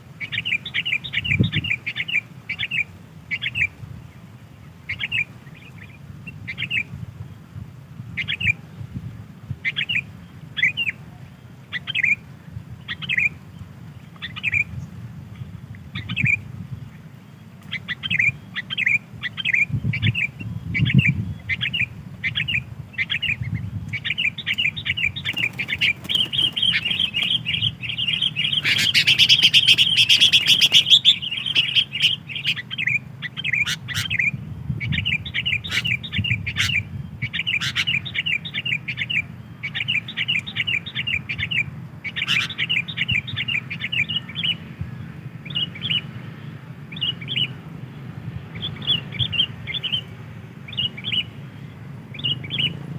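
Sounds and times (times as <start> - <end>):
bulbul chirping: 24.0 - 34.2.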